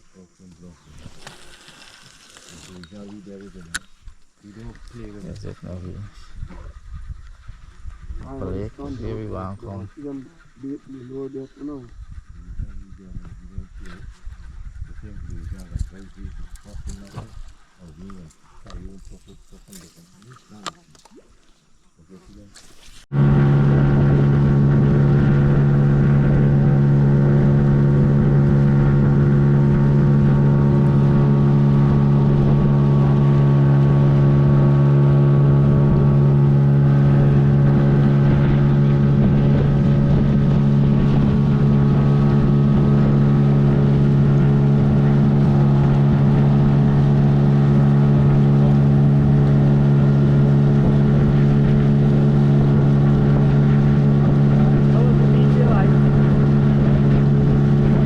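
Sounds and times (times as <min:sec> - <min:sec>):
motorboat engine humming: 0:00.0 - 0:58.0.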